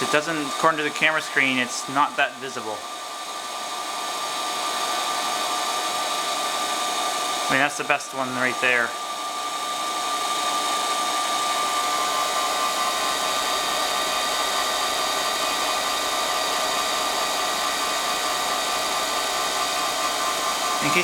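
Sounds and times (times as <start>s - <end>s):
ceiling fan whining and rushing: 8.6s - 21.0s.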